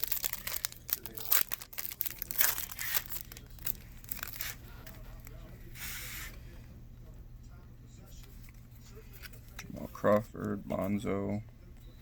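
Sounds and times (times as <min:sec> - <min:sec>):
foil wrappers crinkling and tearing: 0:00.0 - 0:05.4.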